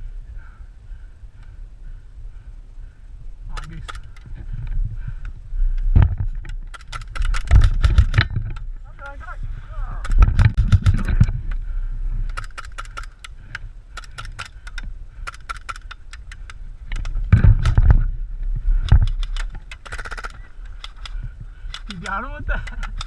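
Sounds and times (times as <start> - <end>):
low rumbling on microphone: 4.2 - 12.4, 16.5 - 19.7
airsoft guns firing: 6.7 - 8.2, 10.0 - 11.2, 18.9 - 23.0.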